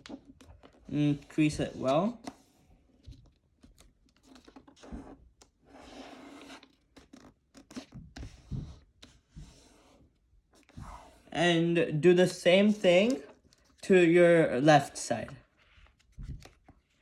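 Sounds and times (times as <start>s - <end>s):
paper being folded and creased: 0.0s - 11.3s, 15.5s - 17.0s.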